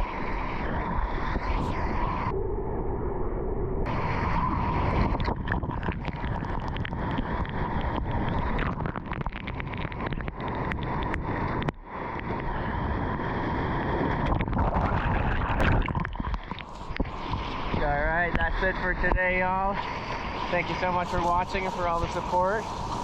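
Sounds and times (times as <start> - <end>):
water noise: 0.0 - 23.0
wind buffeting microphone: 0.0 - 23.0
crackles and knocks: 3.9 - 13.2, 13.8 - 19.4.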